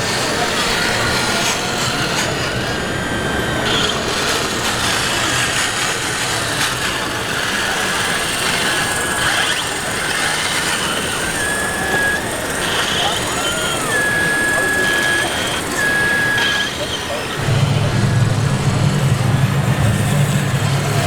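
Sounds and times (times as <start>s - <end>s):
construction machines working: 0.0s - 21.0s
high electric whine: 7.3s - 21.0s.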